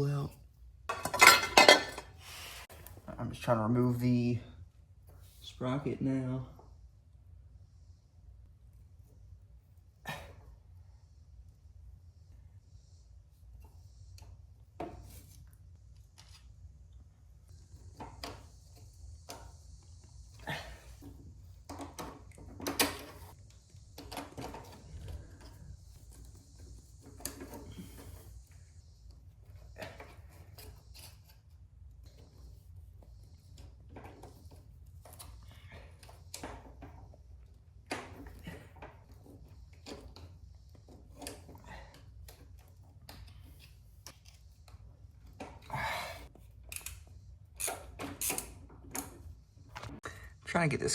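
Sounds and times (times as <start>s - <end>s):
hand tools clinking on metal: 0.9s - 2.1s.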